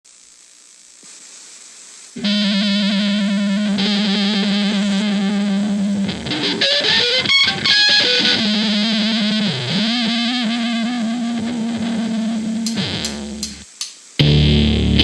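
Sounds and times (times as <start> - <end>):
distorted electric guitar: 2.2 - 15.0.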